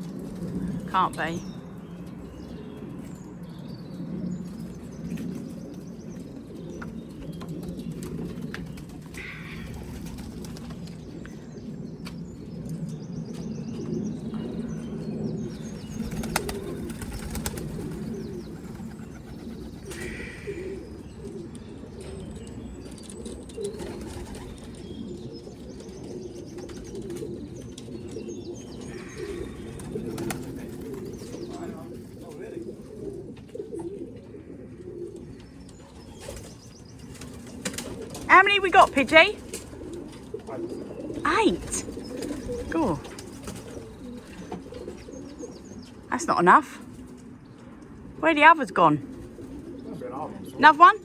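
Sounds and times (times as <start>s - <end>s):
wings flapping: 0.0s - 1.4s, 4.5s - 11.4s, 15.4s - 21.4s, 22.1s - 34.0s, 35.8s - 45.6s
pigeons cooing: 0.0s - 51.0s.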